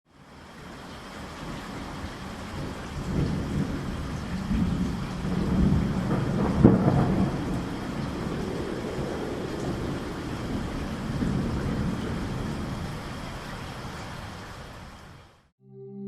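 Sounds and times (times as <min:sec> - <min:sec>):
rain: 0:00.1 - 0:15.5
rolling thunder: 0:01.4 - 0:14.0.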